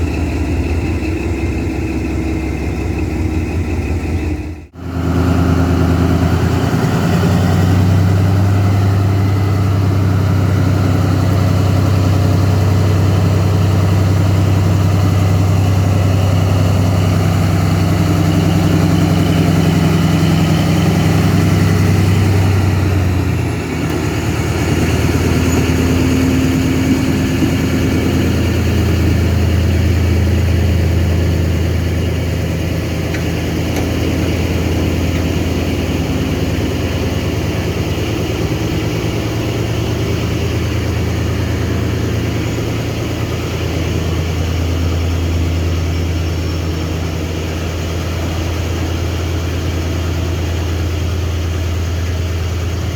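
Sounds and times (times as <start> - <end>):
diesel locomotive engine running: 0.0 - 52.9.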